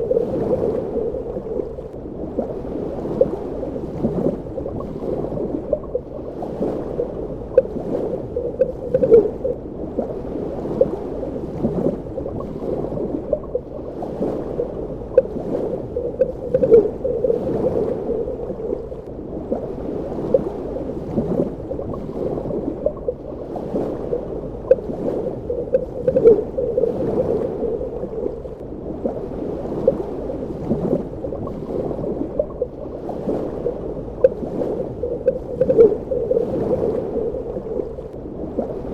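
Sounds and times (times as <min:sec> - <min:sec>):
muffled underwater wash: 0:00.0 - 0:38.9
bubbling pops and gurgles: 0:06.9 - 0:09.6, 0:14.5 - 0:19.0, 0:25.5 - 0:28.4.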